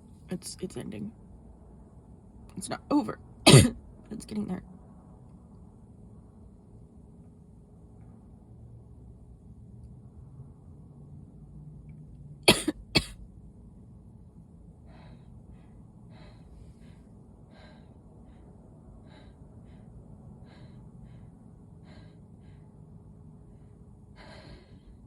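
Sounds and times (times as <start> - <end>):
person coughing sharply: 3.5 - 3.8, 12.5 - 13.1
faint wheezy breaths: 14.7 - 25.0.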